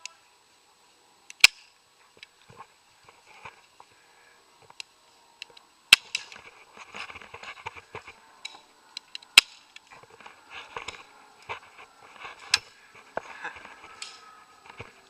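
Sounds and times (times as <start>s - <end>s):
small clicks: 1.3s - 2.6s
rustling: 2.0s - 15.0s.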